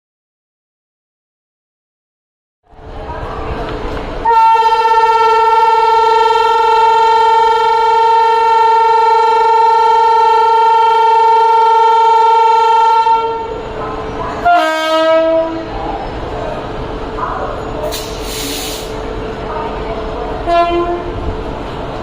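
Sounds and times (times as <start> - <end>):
train rumbling: 2.7 - 22.0
locomotive air horn blasts: 4.2 - 13.5, 14.4 - 15.7, 20.5 - 21.2
burst of hiss: 17.9 - 19.0.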